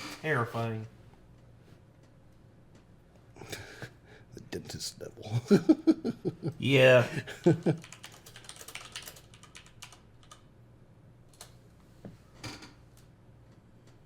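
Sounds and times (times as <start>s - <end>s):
typing on computer keyboard: 7.7s - 10.5s.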